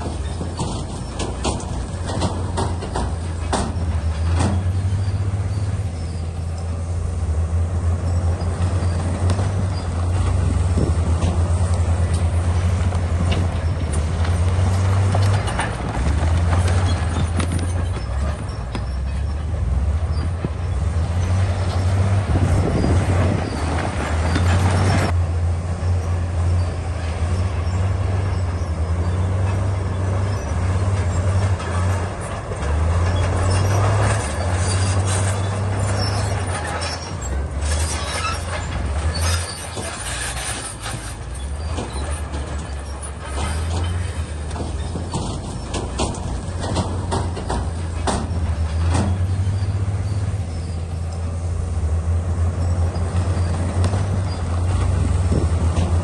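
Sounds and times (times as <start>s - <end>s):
metallic knocks: 0.0s - 5.5s, 40.8s - 50.3s
grinding scrapes of rock and tracks: 0.0s - 25.2s, 26.5s - 51.1s
bulldozer diesel engine running: 0.0s - 56.0s.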